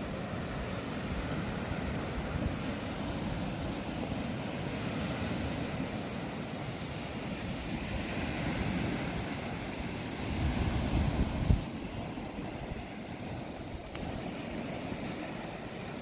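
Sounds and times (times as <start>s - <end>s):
lake waves washing in: 0.0s - 16.0s
wind buffeting microphone: 0.0s - 16.0s.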